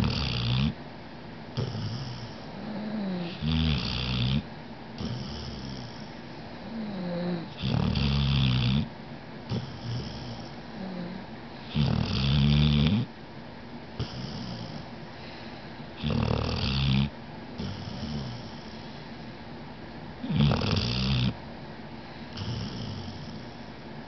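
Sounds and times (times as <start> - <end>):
loud snoring: 0.0 - 0.8, 1.6 - 4.4, 5.0 - 8.9, 9.5 - 13.1, 14.0 - 14.9, 16.0 - 18.8, 20.2 - 21.4, 22.3 - 23.6
quiet breaths: 1.6 - 8.8, 9.4 - 12.0, 14.0 - 19.6, 20.2 - 24.0.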